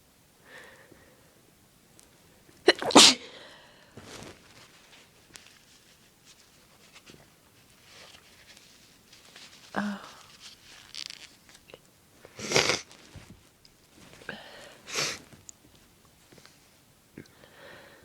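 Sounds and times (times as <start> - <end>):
person sneezing: 2.7 - 3.5, 12.4 - 12.9, 14.9 - 15.3
soft breathy sound: 9.6 - 10.5, 14.1 - 15.3, 17.2 - 18.0.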